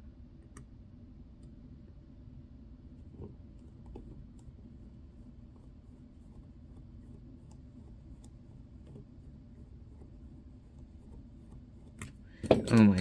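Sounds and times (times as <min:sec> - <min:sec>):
low steady hum: 0:00.0 - 0:13.0
watch tools clicking and scratching: 0:06.3 - 0:13.0.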